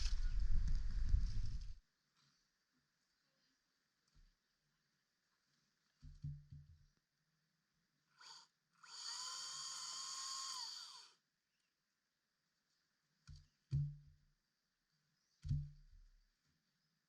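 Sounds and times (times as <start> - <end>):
electric chainsaw whine: 8.1 - 11.2.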